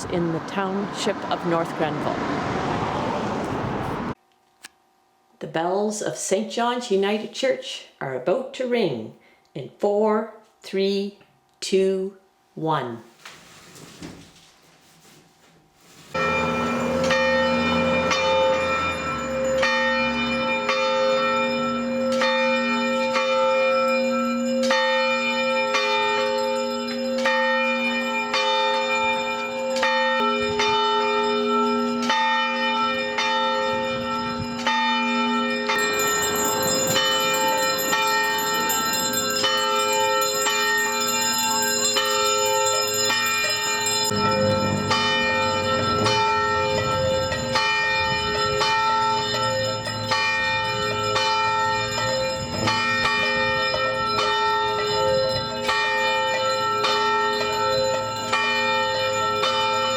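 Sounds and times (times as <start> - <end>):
church bells ringing: 16.2 - 59.9.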